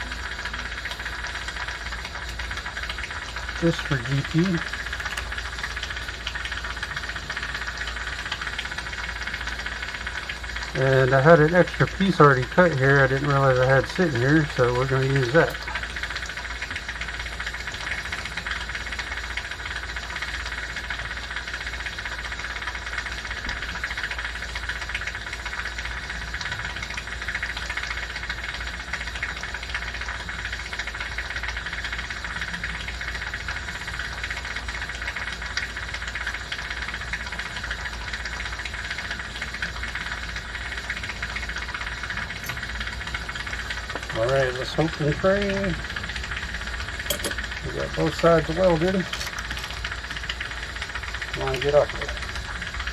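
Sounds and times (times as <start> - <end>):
steady hissing: 0.0 - 20.7, 38.3 - 52.9
constant low hum: 0.0 - 22.9, 37.8 - 52.9.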